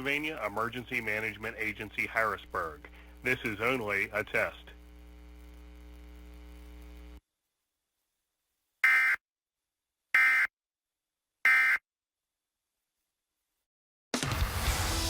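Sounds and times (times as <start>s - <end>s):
faint steady hum: 0.0s - 7.2s.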